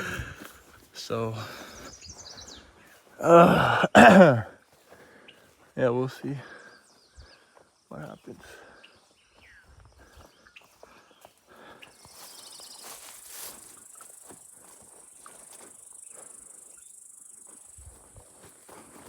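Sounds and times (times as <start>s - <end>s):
footsteps on a trail: 0.0s - 19.0s
high-pitched insect chorus: 12.0s - 19.0s.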